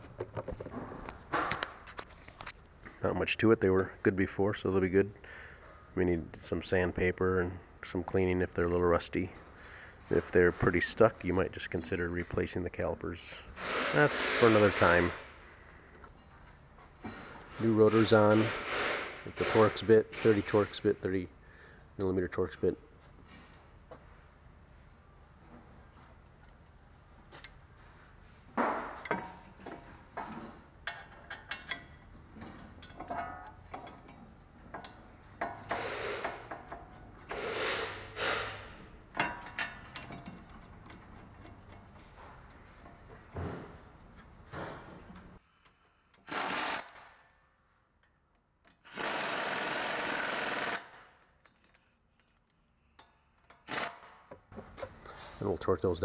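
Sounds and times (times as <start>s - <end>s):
impact wrench running bolts: 13.6s - 15.3s, 17.8s - 20.8s, 28.9s - 43.0s, 46.1s - 47.2s, 48.7s - 51.8s, 53.0s - 54.4s
metal tools clinking: 39.2s - 43.1s.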